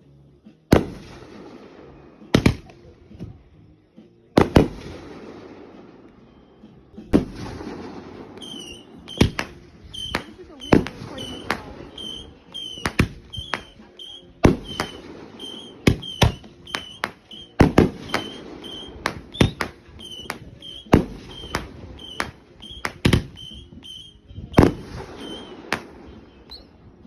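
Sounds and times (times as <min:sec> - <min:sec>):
fireworks bangs: 0:04.4 - 0:05.7, 0:07.0 - 0:26.6
fireworks crackling: 0:07.0 - 0:26.8.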